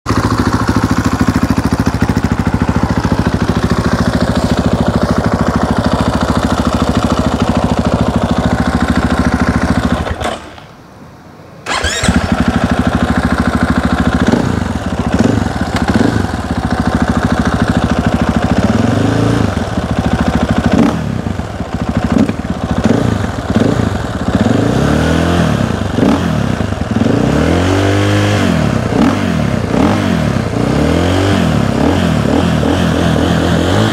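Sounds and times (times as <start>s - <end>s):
dirt bike engine idling: 0.1s - 10.5s, 11.7s - 33.9s
engine revving: 11.6s - 13.4s, 14.0s - 19.9s, 20.6s - 21.4s, 22.1s - 33.9s.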